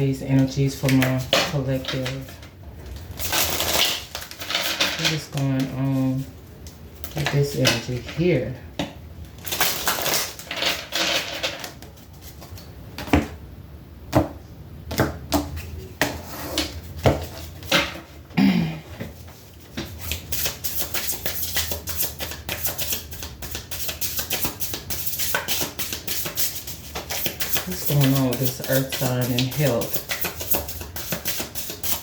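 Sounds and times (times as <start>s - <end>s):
cards shuffling: 19.8s - 32.0s.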